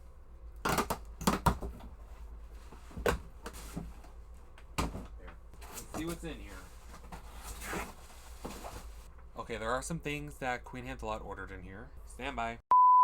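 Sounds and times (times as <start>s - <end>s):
cardboard ripping and knocking: 6.9s - 9.1s.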